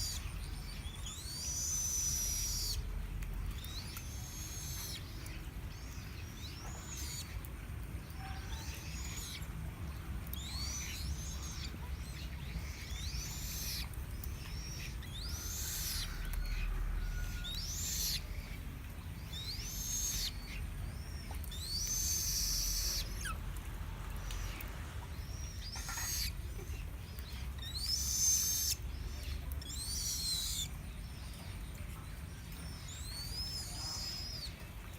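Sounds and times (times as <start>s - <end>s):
bird calling: 19.3s - 23.4s, 25.2s - 26.9s.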